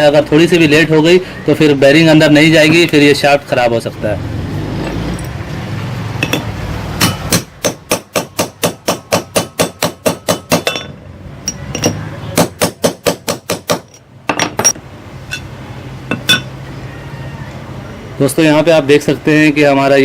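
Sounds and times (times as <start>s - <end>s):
hammer tapping metal: 6.2s - 15.5s.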